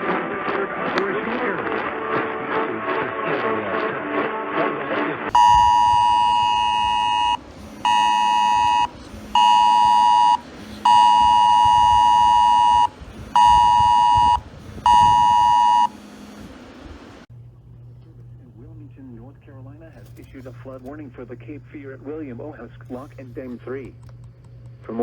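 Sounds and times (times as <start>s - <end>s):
music: 0.0s - 5.3s
two-tone electronic alert: 5.3s - 16.0s.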